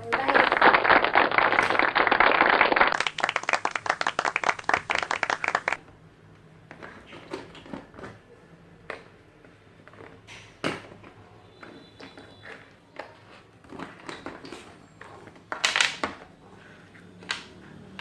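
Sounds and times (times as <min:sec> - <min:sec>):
plastic bricks clattering: 0:12.1 - 0:16.2.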